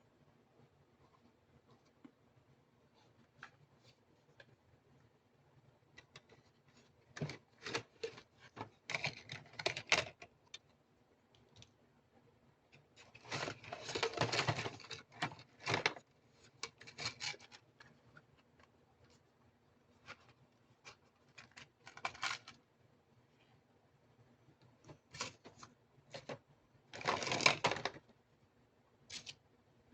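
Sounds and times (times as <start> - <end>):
packaging crackling rustle: 21.0 - 22.6.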